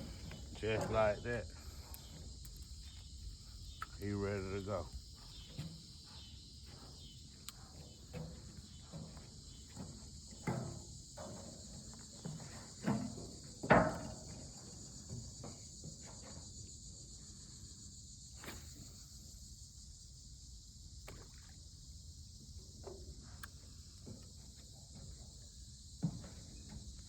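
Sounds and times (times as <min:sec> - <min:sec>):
night insects chirping: 0:00.0 - 0:27.0
knocks and thumps: 0:07.7 - 0:16.5.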